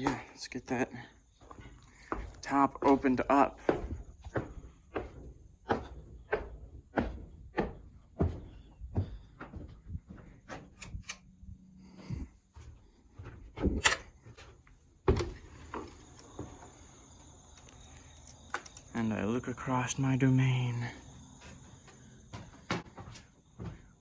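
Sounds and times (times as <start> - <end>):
wooden knocks and clunks: 1.4 - 10.8, 12.5 - 16.8.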